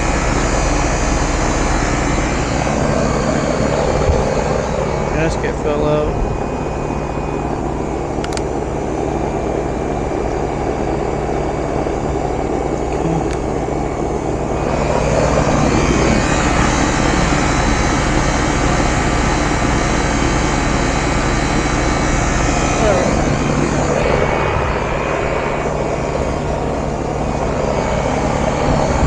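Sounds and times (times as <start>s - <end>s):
condenser fan rushing: 0.0s - 29.0s
low compressor hum: 0.0s - 29.0s.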